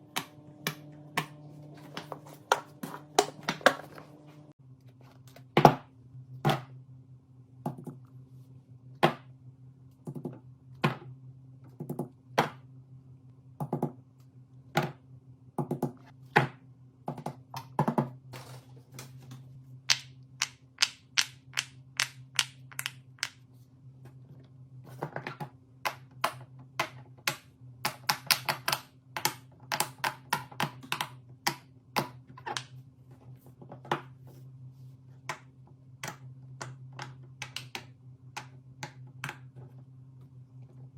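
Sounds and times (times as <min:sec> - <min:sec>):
steady low hum: 0:00.0 - 0:40.9
small objects clicking and tapping: 0:19.9 - 0:23.4, 0:25.3 - 0:32.7.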